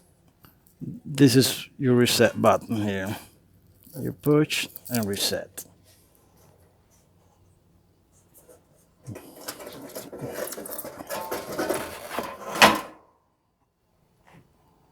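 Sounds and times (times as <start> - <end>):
rattling and scraping parts: 8.3 - 13.0.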